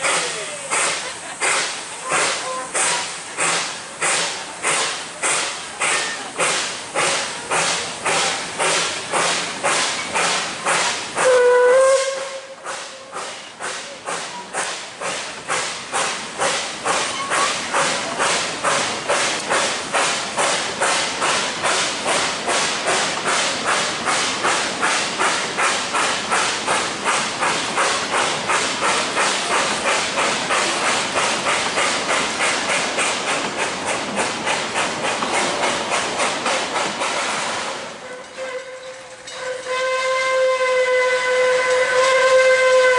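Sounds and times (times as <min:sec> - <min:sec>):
steam locomotive chuffing: 0:00.0 - 0:42.9
steam whistle blast: 0:11.2 - 0:13.2, 0:38.0 - 0:42.9.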